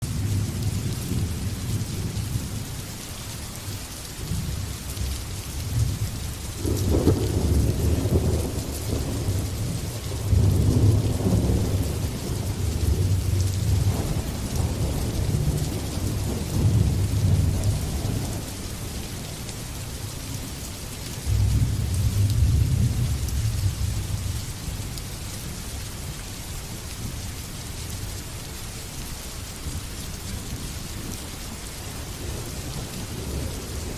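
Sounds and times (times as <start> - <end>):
rain hissing: 0.0 - 33.9
thunder rumbling: 5.7 - 19.5, 21.2 - 24.8.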